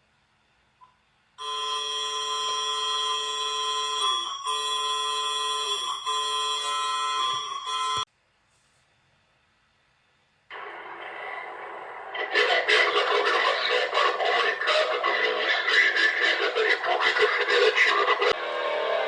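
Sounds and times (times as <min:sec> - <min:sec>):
harsh multi-tone alarm: 0:01.4 - 0:08.1, 0:10.5 - 0:19.0.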